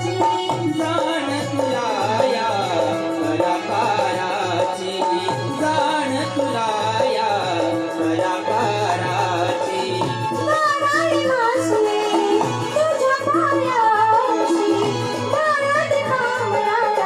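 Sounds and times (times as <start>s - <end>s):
drumming: 0.0s - 17.0s.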